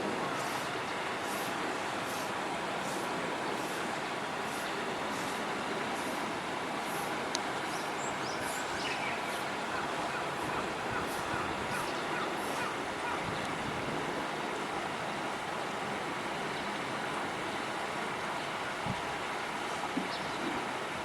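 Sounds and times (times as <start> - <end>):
traffic noise: 0.0 - 12.8
faint bird calling: 7.7 - 13.3
wind noise: 9.7 - 14.3.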